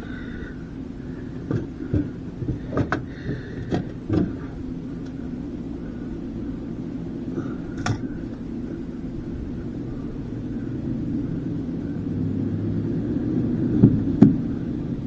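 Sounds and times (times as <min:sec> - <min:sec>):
steady low rumble: 0:00.0 - 0:15.0
sharp knocks: 0:01.2 - 0:05.2, 0:07.8 - 0:08.2.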